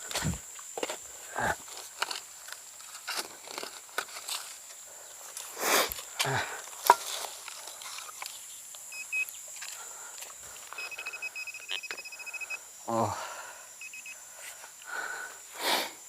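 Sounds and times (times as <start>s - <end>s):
metal detector electronic tones: 8.9s - 9.4s, 10.7s - 12.6s, 13.8s - 14.2s.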